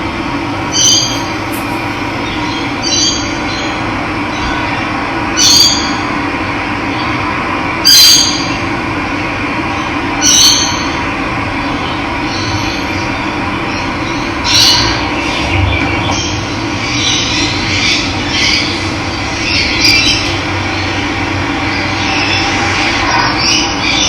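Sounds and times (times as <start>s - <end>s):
bird high short call: 0.6s - 3.3s.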